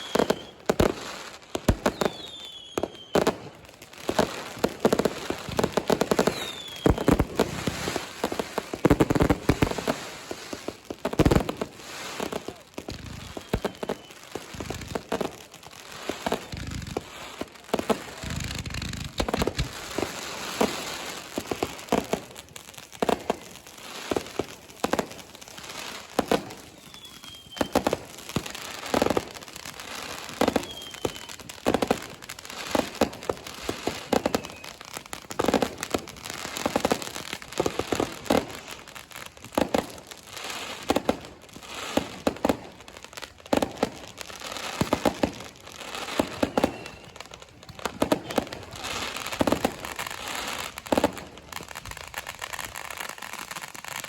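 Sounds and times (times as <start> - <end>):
firework whistles: 0.0 - 10.6, 11.7 - 22.1, 25.3 - 35.7, 43.8 - 53.9
fireworks banging and crackling: 0.0 - 54.0.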